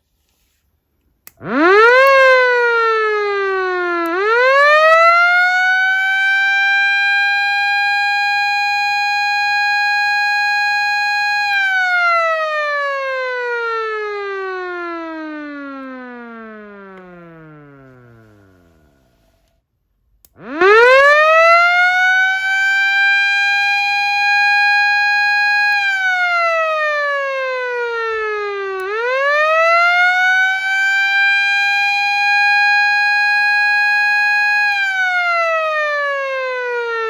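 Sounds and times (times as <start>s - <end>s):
siren switch click: 1.2s - 2.6s, 4.0s - 5.2s, 15.7s - 19.6s, 25.5s - 26.0s, 28.7s - 29.1s
motor siren wailing: 1.3s - 19.4s, 20.3s - 37.0s.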